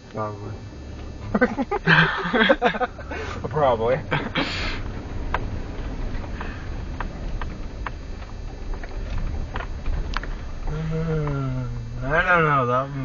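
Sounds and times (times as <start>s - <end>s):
engine running under load: 0.0s - 13.0s
short hiss: 4.4s - 4.8s.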